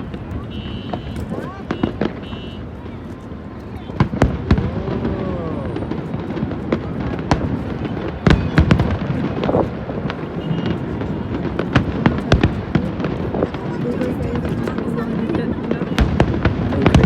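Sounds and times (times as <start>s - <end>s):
fireworks bangs and crackles: 0.0s - 17.0s
fireworks rumble: 0.0s - 17.0s.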